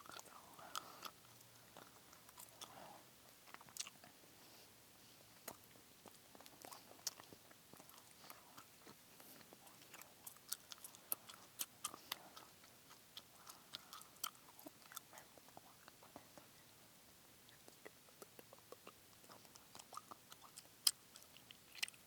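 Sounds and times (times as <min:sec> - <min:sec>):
gum chewing mouth clicks: 0:00.0 - 0:02.8, 0:03.4 - 0:04.1, 0:05.4 - 0:16.5, 0:17.5 - 0:22.0.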